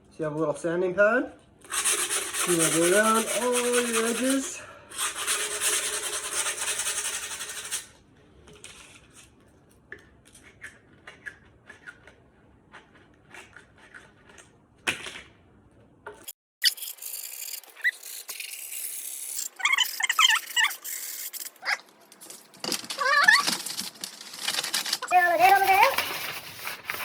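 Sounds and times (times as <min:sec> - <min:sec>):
handling noises and ticks: 0:19.4 - 0:27.0.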